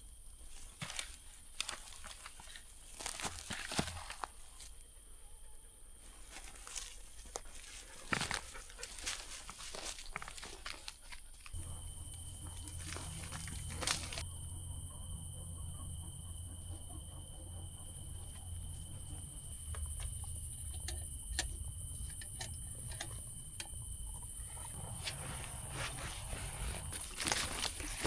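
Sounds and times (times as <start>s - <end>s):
crickets chirring: 0.0s - 28.0s
low rumble: 11.6s - 28.0s.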